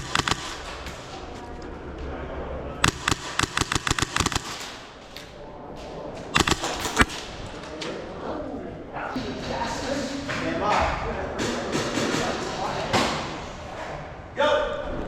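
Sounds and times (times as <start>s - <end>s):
airsoft guns firing: 0.0s - 1.5s, 2.8s - 5.3s, 6.3s - 7.6s.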